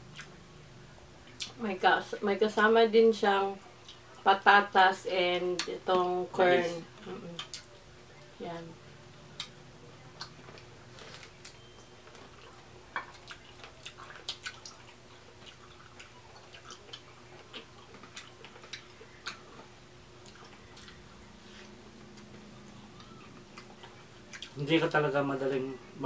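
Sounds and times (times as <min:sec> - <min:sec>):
faint steady hum: 0:00.0 - 0:26.0
chewing and lip smacking: 0:00.1 - 0:00.4, 0:01.2 - 0:01.6, 0:03.6 - 0:04.2, 0:07.0 - 0:08.3, 0:09.2 - 0:24.7.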